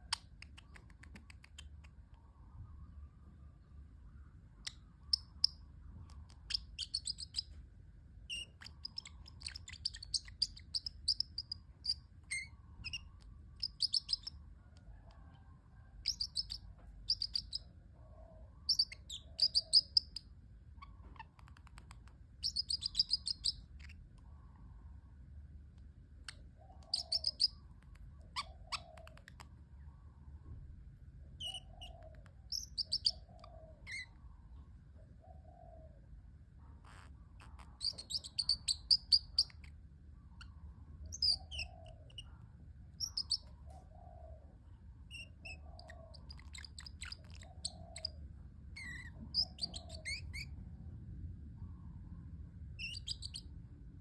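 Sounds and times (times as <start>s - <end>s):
parrotlet chirping: 0.0s - 2.1s, 4.5s - 7.6s, 8.3s - 15.4s, 16.0s - 17.7s, 18.4s - 24.7s, 26.2s - 29.8s, 31.4s - 34.6s, 36.8s - 44.1s, 45.0s - 50.6s, 52.7s - 53.6s.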